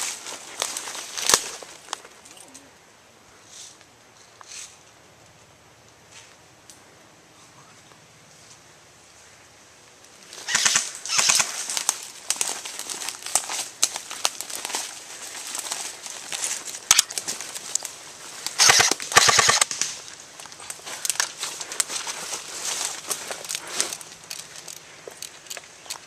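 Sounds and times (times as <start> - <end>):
airsoft rifle bursts: 10.5 - 11.6, 16.9 - 17.1, 18.6 - 19.8.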